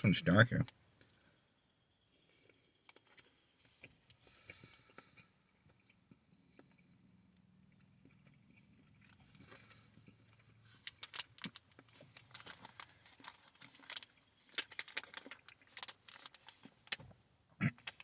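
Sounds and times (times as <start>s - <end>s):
plastic pouch crinkling: 10.7s - 17.0s.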